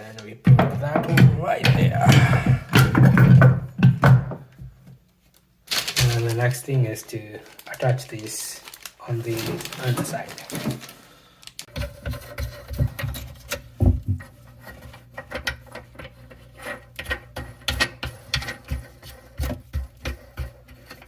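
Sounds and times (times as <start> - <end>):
steady low hum: 0.6 - 3.8.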